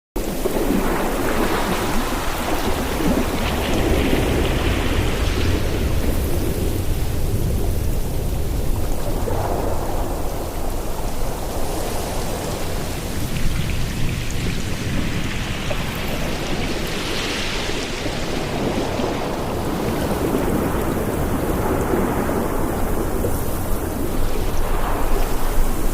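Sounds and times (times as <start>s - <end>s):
low rumble of wind: 0.2s - 25.9s
ocean waves washing in: 0.2s - 25.9s.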